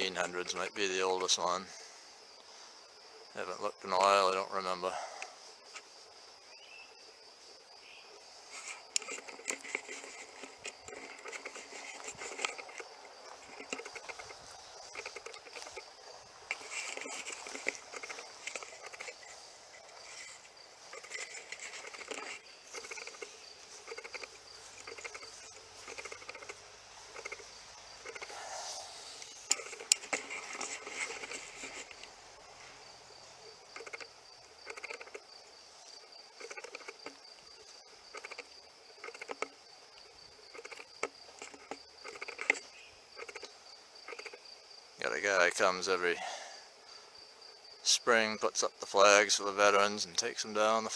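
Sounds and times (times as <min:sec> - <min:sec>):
insects trilling: 0:00.0 - 0:50.9
rustling and crackling clicks: 0:04.0 - 0:06.3, 0:08.2 - 0:44.5.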